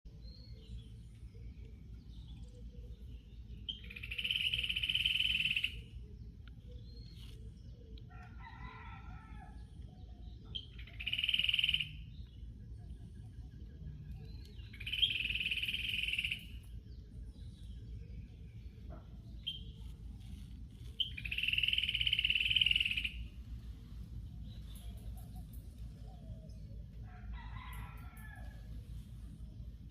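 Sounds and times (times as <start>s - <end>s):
fainter lower bird call: 10.6s - 12.0s, 18.9s - 23.7s
bird calling loudly: 21.0s - 23.2s.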